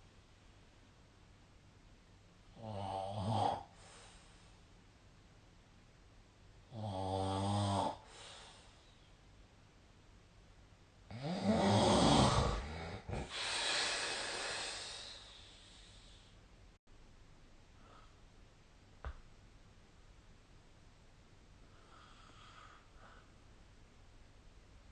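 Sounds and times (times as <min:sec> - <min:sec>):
person snoring: 0:02.6 - 0:03.7, 0:06.7 - 0:08.1, 0:11.1 - 0:16.0
breathy exhale: 0:12.0 - 0:16.4.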